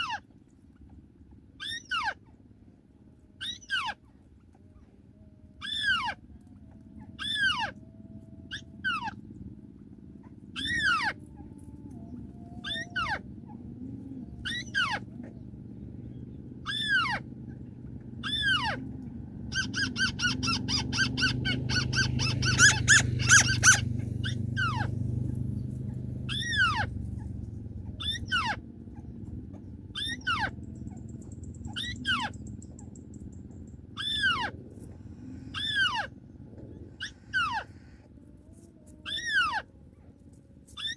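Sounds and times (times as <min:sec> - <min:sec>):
low rumble: 0:04.1 - 0:40.8
crake calling: 0:05.6 - 0:38.2, 0:39.0 - 0:39.7
bird chattering run: 0:14.4 - 0:34.9.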